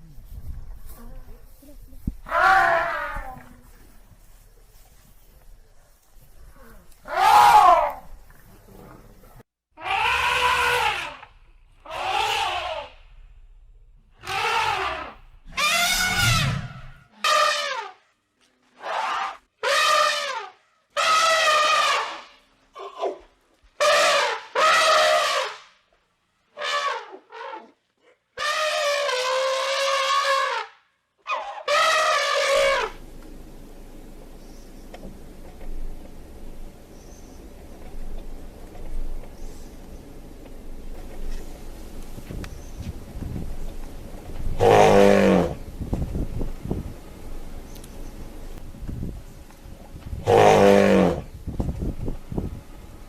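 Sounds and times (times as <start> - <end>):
elephant trumpeting: 2.2 - 3.3, 7.0 - 8.0, 9.8 - 13.0, 14.2 - 18.0, 18.8 - 23.2, 23.8 - 25.6, 26.6 - 27.7, 28.4 - 30.7, 31.3 - 33.0, 44.5 - 45.6, 50.1 - 51.3.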